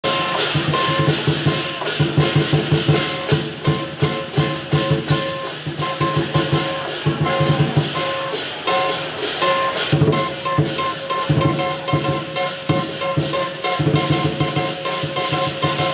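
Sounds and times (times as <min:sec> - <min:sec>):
music with fast drum beat: 0:00.0 - 0:15.9.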